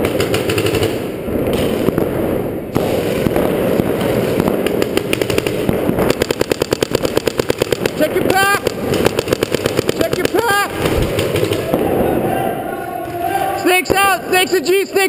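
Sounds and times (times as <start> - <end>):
paintball markers firing: 0.0 - 2.0, 2.8 - 11.8.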